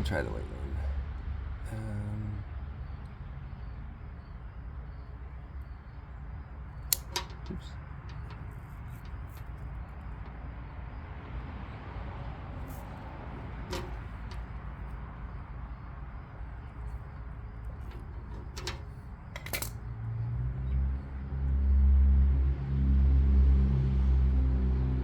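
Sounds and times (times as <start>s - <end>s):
vehicle engine rumble: 0.0s - 25.0s
small parts clicking and rattling: 6.8s - 10.4s, 12.6s - 15.2s, 16.5s - 19.9s.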